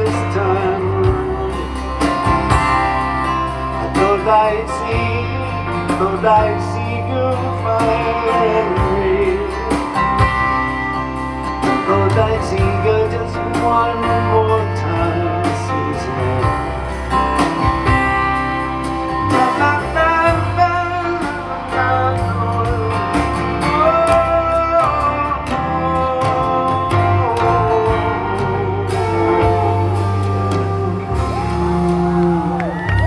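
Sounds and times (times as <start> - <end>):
acoustic guitar: 0.0 - 33.0.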